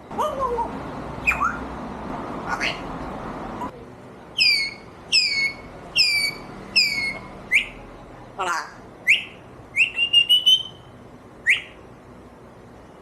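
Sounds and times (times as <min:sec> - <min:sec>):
parrot whistling: 0:01.2 - 0:01.7, 0:04.4 - 0:07.8, 0:09.0 - 0:11.8.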